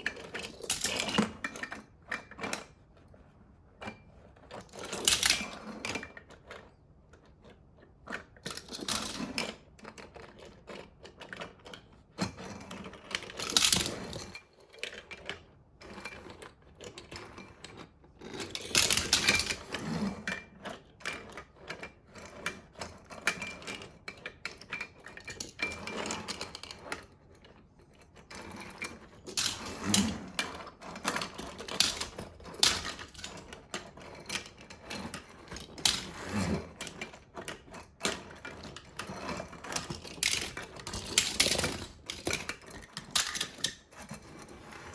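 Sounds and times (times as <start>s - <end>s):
toy cars clattering: 0.1s - 1.7s, 4.6s - 6.1s, 8.2s - 9.6s, 12.9s - 19.8s, 28.1s - 44.9s.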